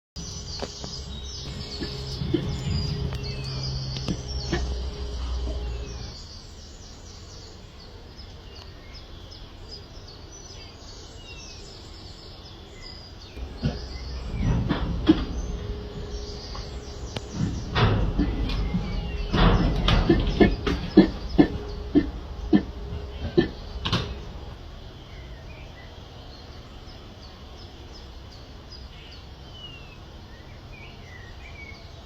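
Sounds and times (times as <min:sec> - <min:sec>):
low rumble: 0:00.2 - 0:09.7, 0:13.2 - 0:29.2
birds chirping: 0:00.2 - 0:32.0.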